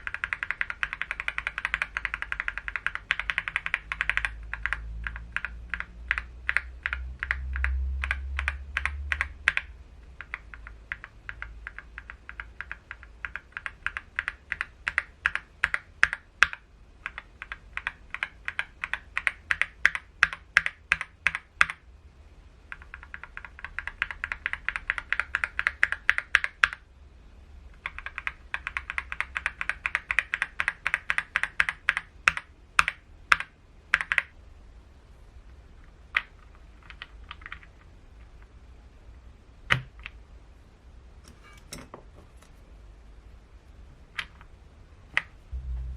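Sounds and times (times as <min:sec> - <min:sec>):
mechanical keyboard typing: 0:00.0 - 0:21.8, 0:22.7 - 0:26.8, 0:27.8 - 0:34.3, 0:36.1 - 0:37.8.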